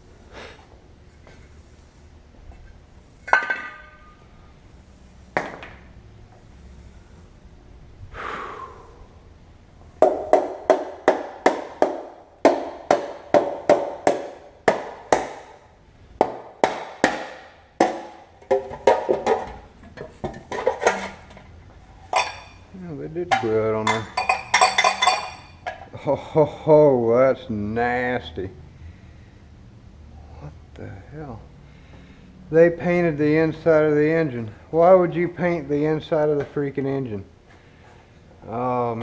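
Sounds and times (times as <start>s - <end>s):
hammer striking metal: 16.2s - 19.1s
metallic clink: 22.1s - 22.6s, 23.8s - 25.7s.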